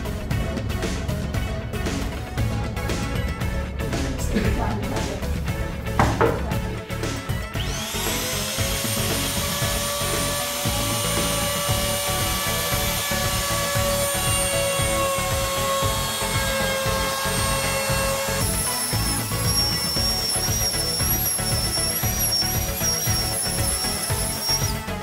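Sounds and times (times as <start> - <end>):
power tool motor whining: 7.3 - 25.0.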